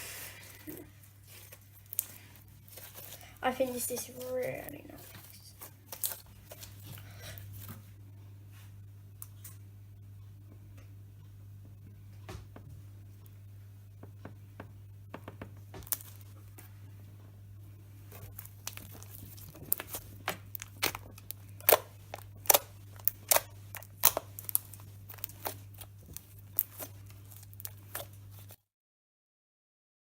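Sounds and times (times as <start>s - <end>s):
slime popping and clicking: 19.7s - 25.9s.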